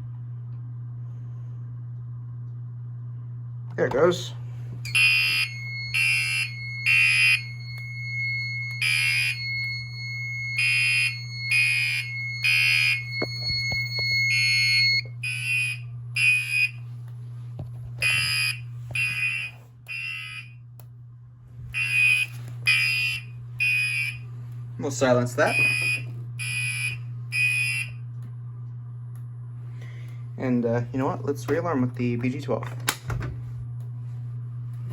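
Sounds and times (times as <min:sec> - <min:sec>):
steady high tone: 0:04.8 - 0:15.6
fire alarm horn blasts: 0:04.8 - 0:16.9, 0:18.0 - 0:20.6, 0:21.7 - 0:24.5, 0:25.3 - 0:28.0.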